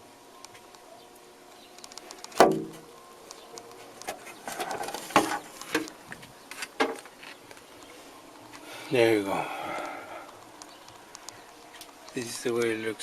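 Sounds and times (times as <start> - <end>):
loud ringing knock: 2.4 - 2.8
turntable cover handling knocks: 2.4 - 2.8.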